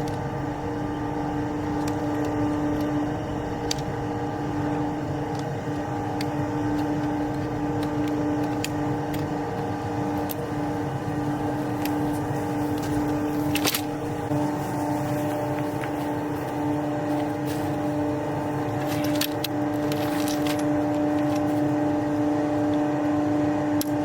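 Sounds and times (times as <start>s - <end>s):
vehicle engine running: 6.2s - 23.2s.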